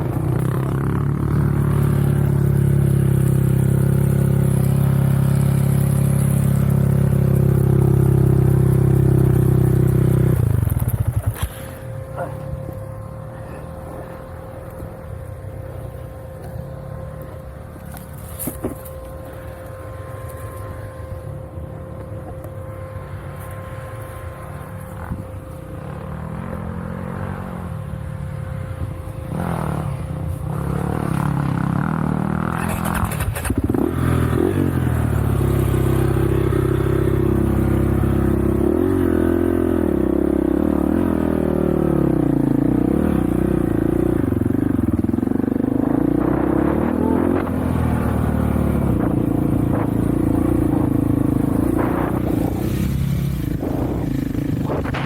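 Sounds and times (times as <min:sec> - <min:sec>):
off-road vehicle engine revving: 0:29.2 - 0:55.0.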